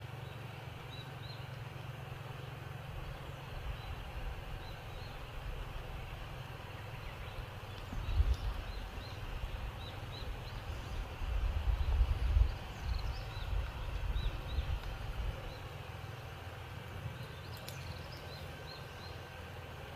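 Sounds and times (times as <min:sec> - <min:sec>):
wind buffeting microphone: 0:03.0 - 0:16.0.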